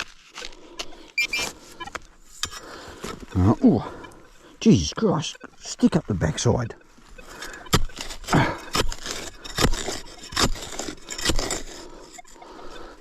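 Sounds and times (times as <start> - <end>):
digging tool scraping dirt: 1.2 - 3.5, 7.2 - 13.0.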